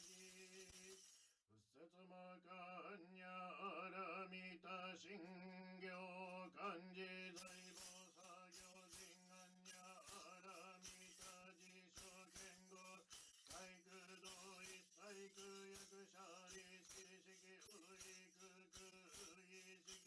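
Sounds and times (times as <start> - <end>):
jingling bells: 0.0 - 1.4, 7.3 - 20.0
man chanting: 1.7 - 20.0.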